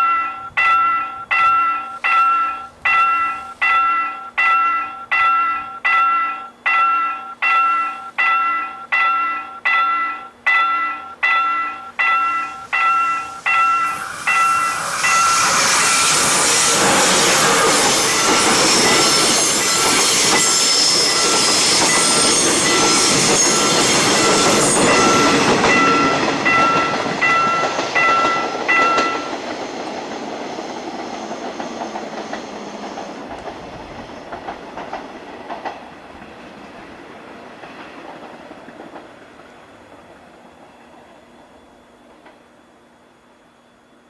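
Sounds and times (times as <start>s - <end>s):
crossing warning bell dinging: 0.0s - 34.9s
train wheels clattering on rails: 0.0s - 42.6s.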